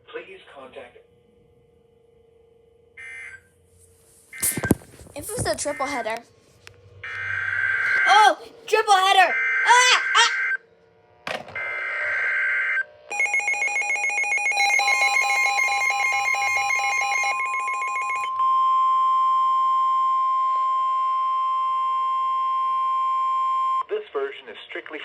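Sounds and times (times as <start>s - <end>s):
steady attention tone: 3.0s - 6.2s
buzzy digital header data: 3.9s - 6.1s
pulsing electronic alert tones: 5.4s - 6.0s.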